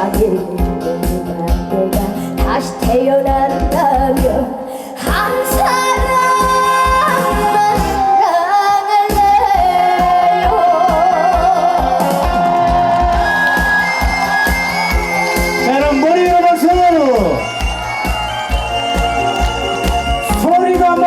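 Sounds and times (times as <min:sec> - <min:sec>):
backing track with steady beat: 0:00.0 - 0:21.0
girl singing: 0:02.5 - 0:11.8.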